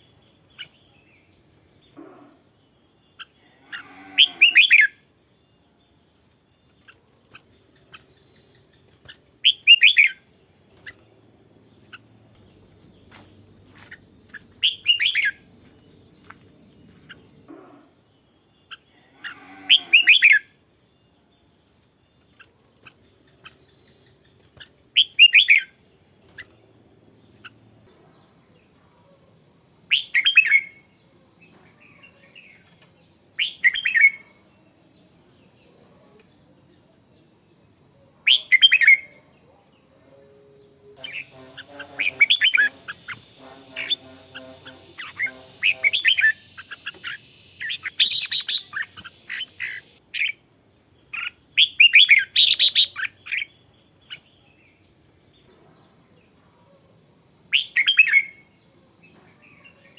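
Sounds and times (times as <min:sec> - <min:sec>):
bird chirping song: 0:00.0 - 0:02.1, 0:06.7 - 0:17.5, 0:22.2 - 0:27.7, 0:41.0 - 0:50.4, 0:51.0 - 0:55.0
faint high-pitched whine: 0:00.0 - 0:59.9.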